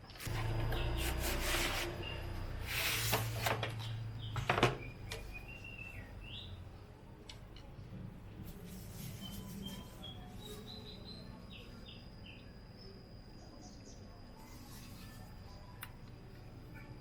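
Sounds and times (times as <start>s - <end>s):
low steady hum: 0.0s - 17.0s
birds chirping faintly: 0.3s - 3.0s, 3.7s - 17.0s.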